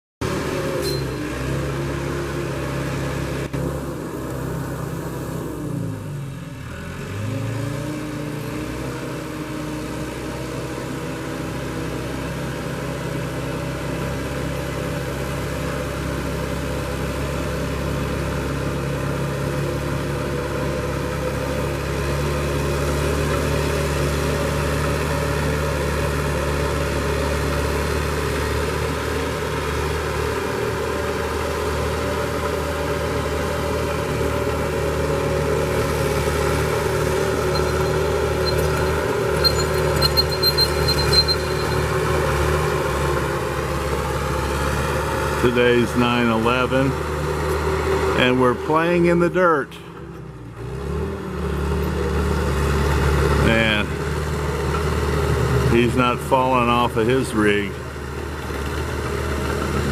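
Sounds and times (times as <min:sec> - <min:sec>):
bulldozer diesel engine running: 0:00.2 - 0:59.9.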